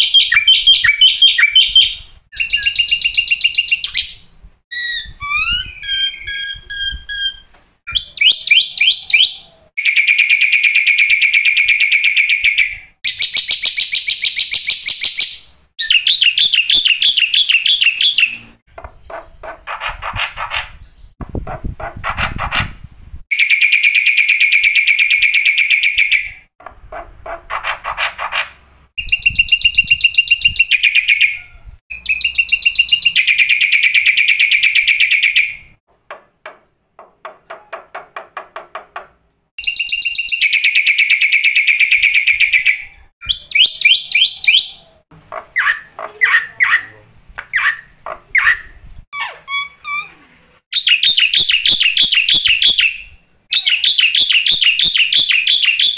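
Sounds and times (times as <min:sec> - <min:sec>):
bird chirps and whistles: 0:00.0 - 0:18.4, 0:29.0 - 0:31.3, 0:31.9 - 0:35.6, 0:39.6 - 0:44.9, 0:47.6 - 0:55.9.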